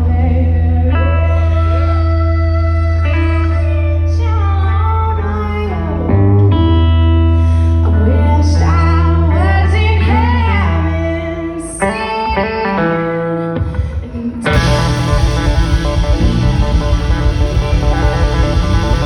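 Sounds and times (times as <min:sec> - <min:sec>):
woman singing: 0:00.0 - 0:06.9, 0:07.7 - 0:16.2
electric guitar: 0:00.0 - 0:19.0
low sustained bass note: 0:14.5 - 0:19.0.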